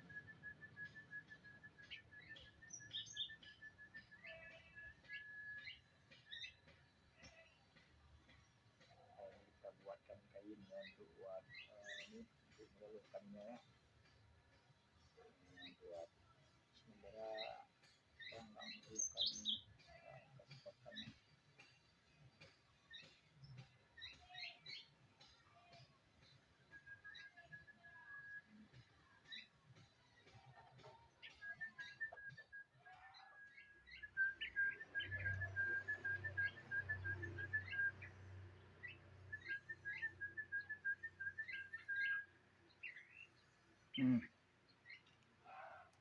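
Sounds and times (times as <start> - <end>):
high whistled bird calls: 0.0 - 5.9, 31.2 - 32.8, 33.4 - 38.2, 38.8 - 43.3
faint bird chirp: 0.0 - 14.2, 15.0 - 46.0.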